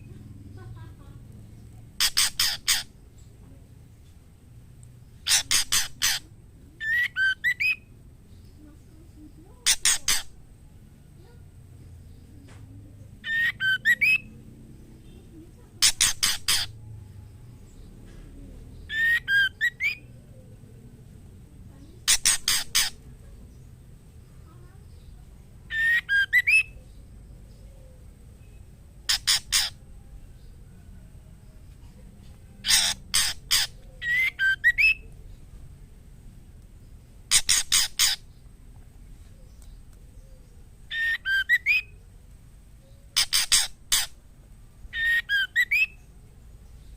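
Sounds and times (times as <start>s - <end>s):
bird harsh rasping calls: 1.9s - 3.1s, 5.1s - 7.9s, 9.5s - 10.5s, 13.1s - 14.4s, 15.0s - 16.8s, 18.8s - 20.2s, 22.0s - 23.4s, 25.7s - 26.8s, 28.4s - 29.9s, 32.6s - 35.1s, 37.2s - 38.5s, 40.5s - 42.0s, 43.1s - 44.2s, 44.9s - 46.0s
bird whistling phrase: 6.8s - 7.8s, 13.2s - 14.3s, 18.9s - 20.1s, 25.7s - 26.8s, 32.6s - 35.1s, 40.9s - 42.0s, 45.0s - 46.0s.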